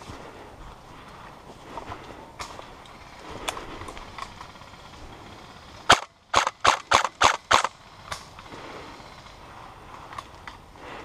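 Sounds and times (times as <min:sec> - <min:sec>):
airsoft gun shots: 0:05.9 - 0:07.7.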